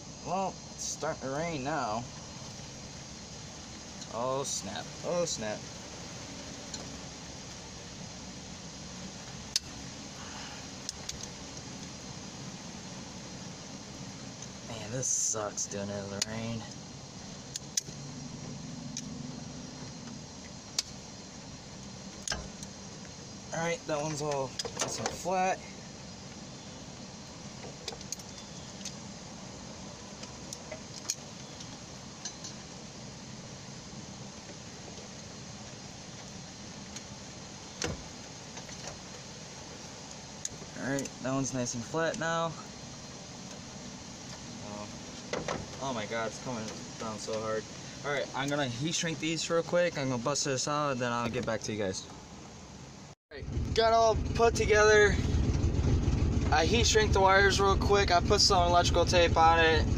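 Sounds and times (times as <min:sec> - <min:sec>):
rain falling: 0:00.4 - 0:17.6, 0:28.8 - 0:50.2
sharp clicks: 0:09.5 - 0:09.8, 0:17.5 - 0:18.0
sharp ticks: 0:16.1 - 0:18.0.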